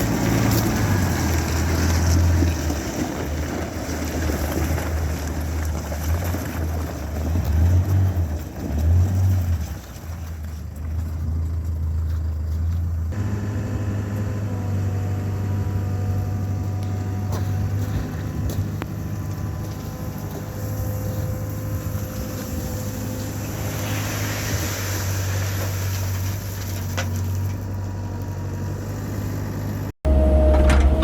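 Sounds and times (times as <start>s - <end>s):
diesel engine droning: 0.0s - 31.0s
hydraulic whine: 30.1s - 31.0s.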